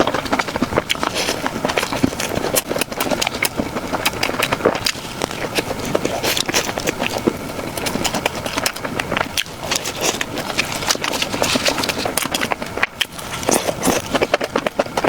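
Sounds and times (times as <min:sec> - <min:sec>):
person chewing food: 0:00.0 - 0:15.0.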